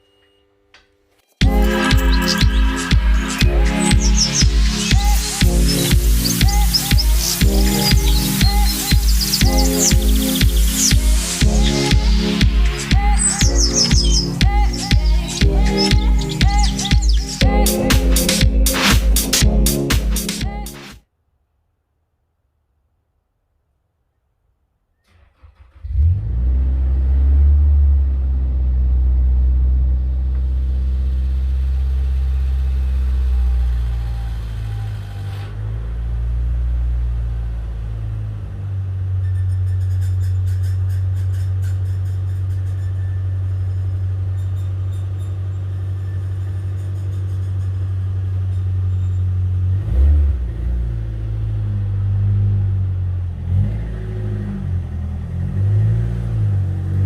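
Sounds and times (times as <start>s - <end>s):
car engine starting and idling: 25.1s - 57.0s.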